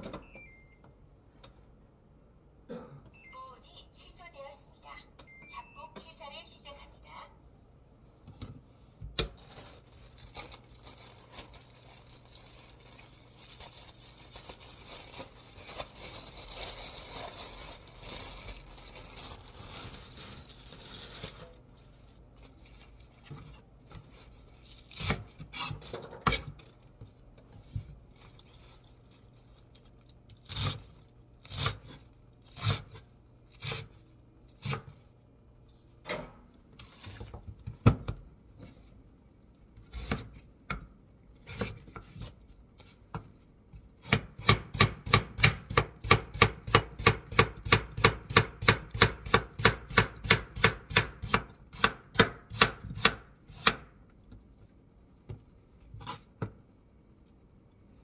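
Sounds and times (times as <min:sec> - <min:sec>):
packaging crinkling and tearing: 0:09.4 - 0:23.2.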